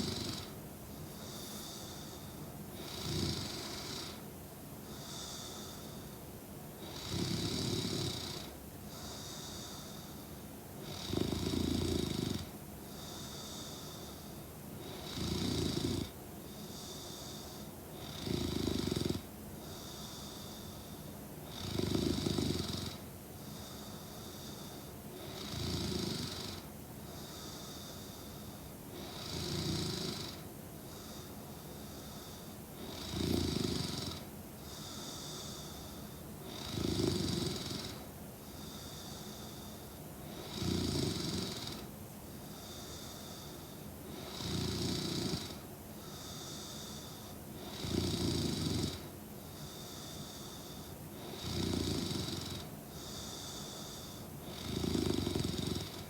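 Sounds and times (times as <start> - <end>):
woman snoring: 0.0 - 0.6, 2.8 - 4.2, 6.8 - 8.5, 10.8 - 12.5, 14.8 - 16.2, 18.0 - 20.7, 21.5 - 23.0, 25.2 - 27.9, 29.0 - 30.4, 31.9 - 41.9, 42.6 - 56.0
quiet breathing: 0.0 - 56.0.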